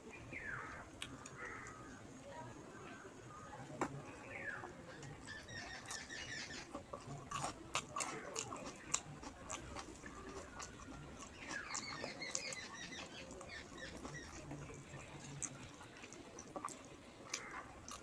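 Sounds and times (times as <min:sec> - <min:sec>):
close-up chewing: 0:05.0 - 0:18.0.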